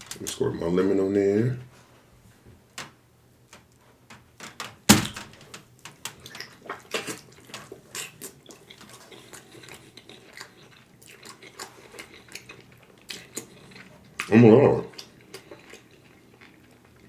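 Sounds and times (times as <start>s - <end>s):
sharp knock: 4.9s - 5.3s
chewing and mouth clicks: 6.2s - 17.0s.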